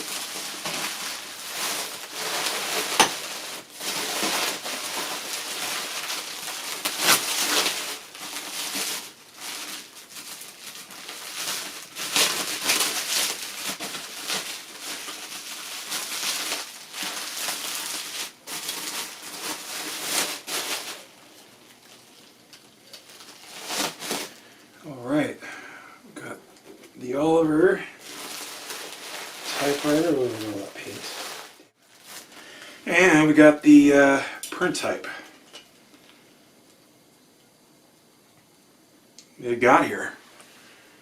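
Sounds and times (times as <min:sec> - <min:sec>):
packing material rustling: 0:00.0 - 0:24.7, 0:27.3 - 0:33.2.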